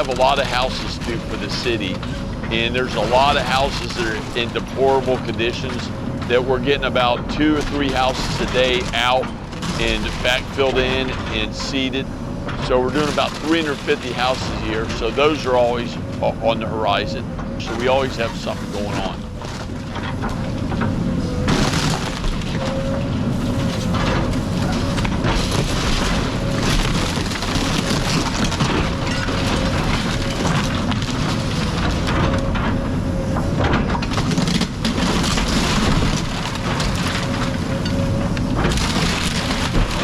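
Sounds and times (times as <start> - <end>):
heavy machine whining: 0.0 - 19.6.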